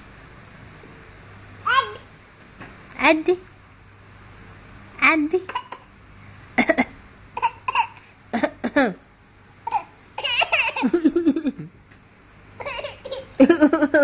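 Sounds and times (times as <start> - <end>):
child making fake coughs: 6.6 - 8.0
child giggling: 10.2 - 11.7, 12.6 - 14.0.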